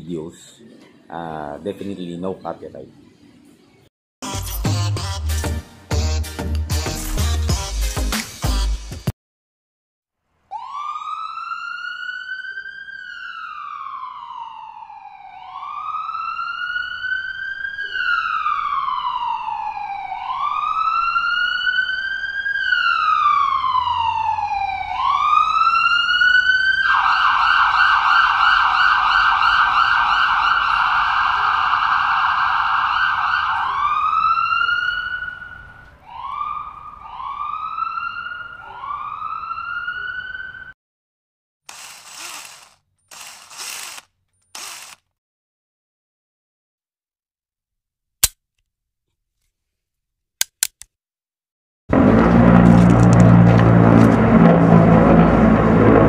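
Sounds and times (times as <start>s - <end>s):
emergency vehicle siren: 10.5s - 40.8s, 51.9s - 56.0s.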